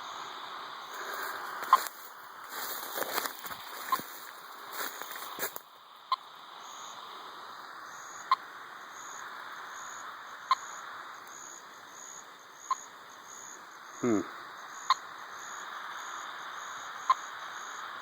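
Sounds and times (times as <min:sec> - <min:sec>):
receiver static: 0:00.0 - 0:11.8
insect trill: 0:00.0 - 0:18.0.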